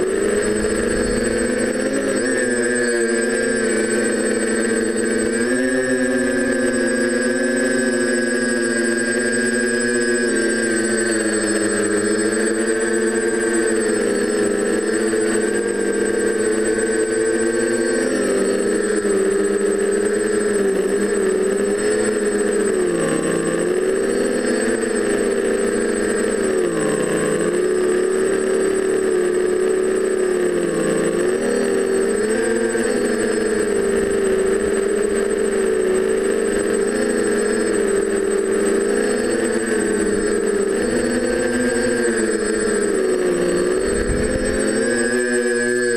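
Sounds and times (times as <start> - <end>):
thin high whine: 0.0 - 6.8, 37.3 - 45.9
quadcopter motors buzzing: 0.0 - 45.9.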